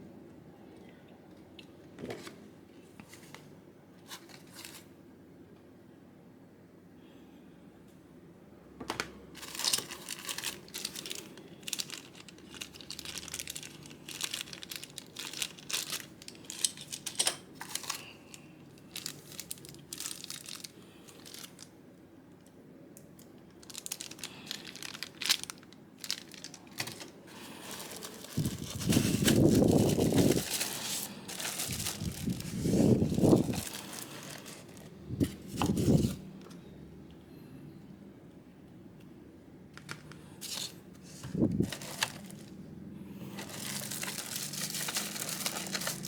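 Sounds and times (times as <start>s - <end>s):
packaging crinkling and rustling: 3.0s - 4.9s, 9.3s - 21.8s, 23.2s - 36.6s, 39.7s - 46.0s.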